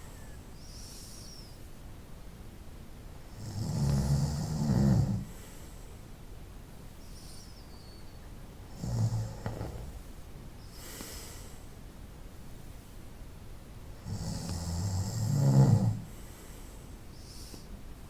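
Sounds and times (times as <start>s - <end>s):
person snoring: 3.4s - 5.3s, 14.0s - 16.1s.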